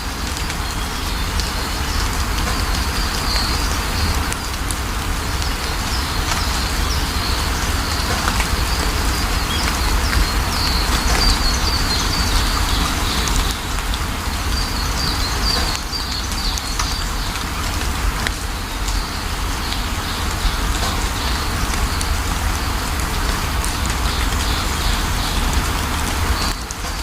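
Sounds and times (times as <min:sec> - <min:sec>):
steady rain falling: 0:00.0 - 0:27.0
bird chirping: 0:05.4 - 0:17.4.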